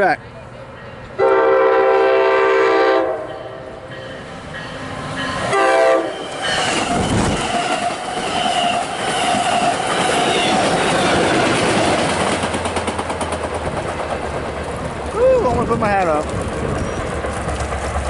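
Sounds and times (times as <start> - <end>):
steady train whine: 0.0 - 18.0
train horn blasts: 1.2 - 3.9, 5.4 - 7.2
train wheels clattering over rail joints: 6.3 - 18.0.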